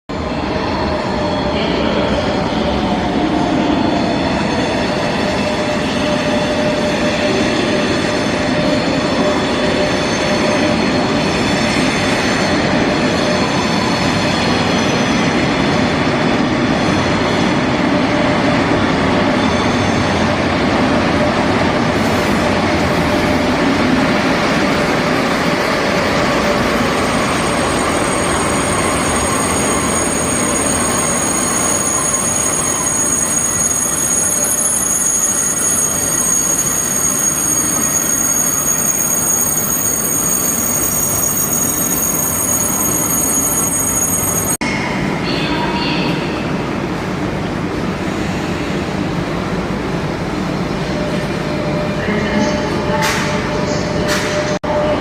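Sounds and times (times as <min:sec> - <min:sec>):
train rumbling: 0:00.1 - 0:55.0.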